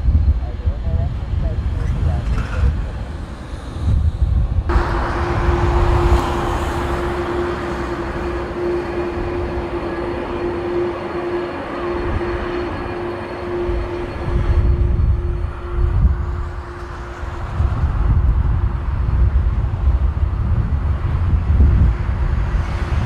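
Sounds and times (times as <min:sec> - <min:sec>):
jet airliner roar: 0:00.0 - 0:23.0
wind rumbling on microphone: 0:00.0 - 0:23.0.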